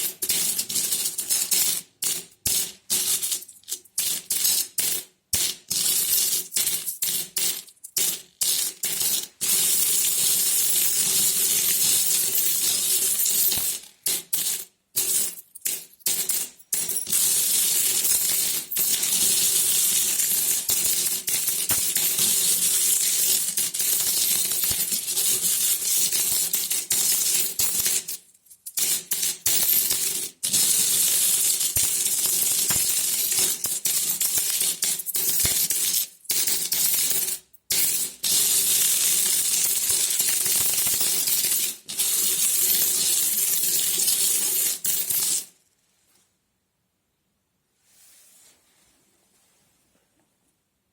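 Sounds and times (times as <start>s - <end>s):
metal coins jingling: 10.8s - 38.2s, 38.8s - 45.5s.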